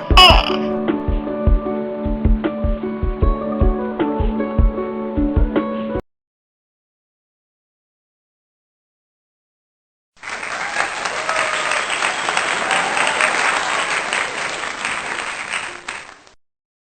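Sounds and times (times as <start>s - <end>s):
crowd applauding: 10.2s - 16.4s.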